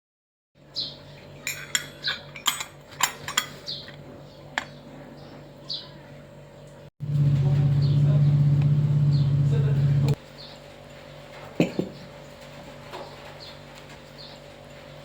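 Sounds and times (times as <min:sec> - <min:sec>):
crockery and cutlery clinking: 0:01.4 - 0:04.0
steady low hum: 0:03.8 - 0:11.0.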